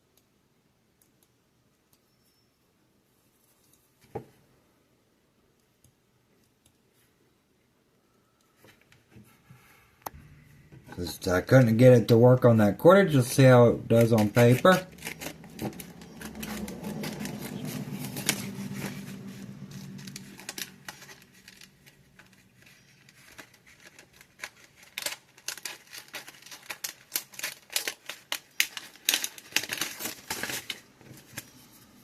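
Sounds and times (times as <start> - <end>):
scissors snipping paper: 13.1 - 31.5.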